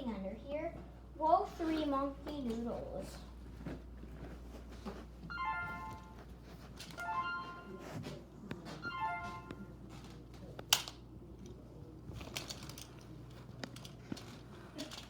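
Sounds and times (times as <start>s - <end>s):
steady musical tones: 5.3s - 6.2s, 7.0s - 8.0s, 8.8s - 9.8s
plastic fidget toys clicking: 10.7s - 11.0s, 12.2s - 13.0s.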